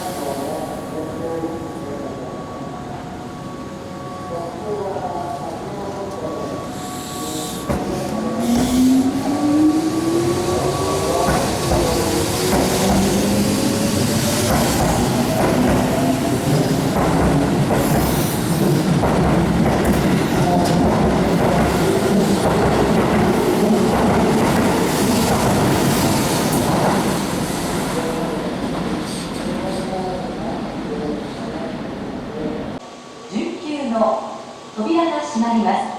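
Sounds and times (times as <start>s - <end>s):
train wheel squeal: 6.6s - 9.0s
train wheels clattering over rails: 7.6s - 9.0s, 10.8s - 27.2s.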